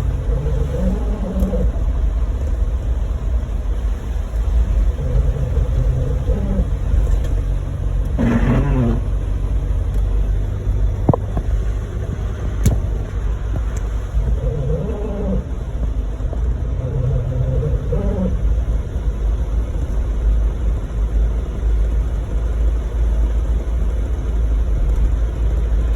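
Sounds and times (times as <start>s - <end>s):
car engine rumble: 0.0s - 25.9s
windshield wiper: 0.1s - 1.7s, 3.8s - 18.4s.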